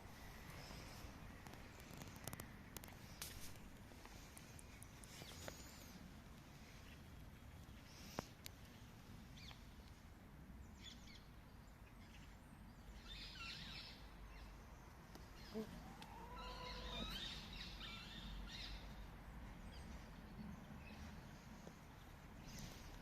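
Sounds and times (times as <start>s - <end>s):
faint high bird chirps: 15.3s - 18.9s
drawn-out rising and falling call: 15.3s - 20.2s.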